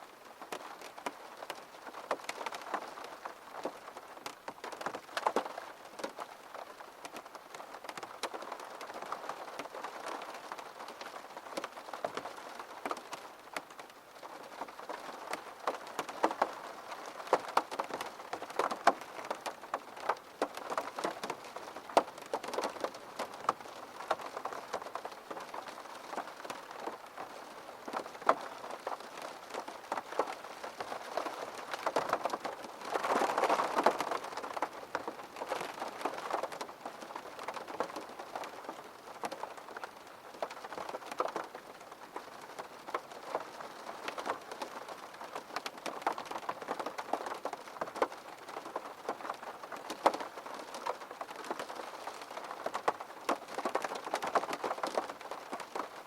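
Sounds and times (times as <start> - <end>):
rain drops ticking on a surface: 0.0 - 56.0.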